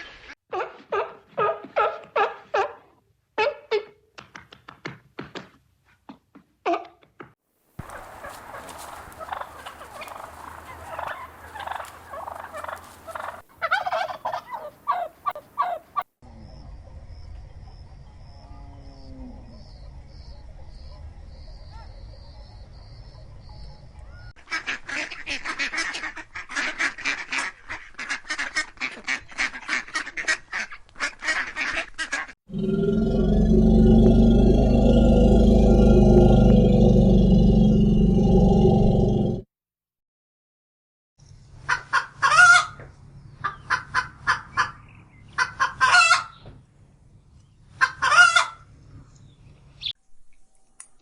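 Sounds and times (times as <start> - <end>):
geese honking: 7.8 - 15.8.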